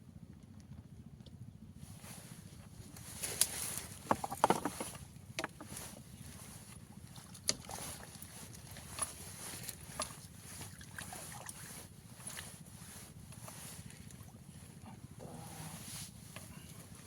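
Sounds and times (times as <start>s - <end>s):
steady low hum: 0.0s - 17.0s
water splashing and sloshing: 2.0s - 15.2s
sharp knocks: 4.1s - 5.7s.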